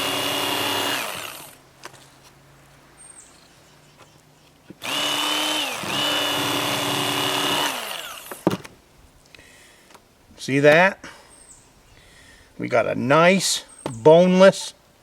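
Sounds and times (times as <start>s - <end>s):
electric knife motor whining: 0.0s - 1.6s, 4.8s - 8.5s.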